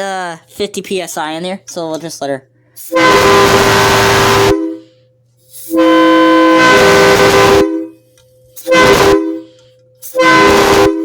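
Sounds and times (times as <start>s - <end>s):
air horn blasts: 2.8s - 8.0s, 8.6s - 11.0s.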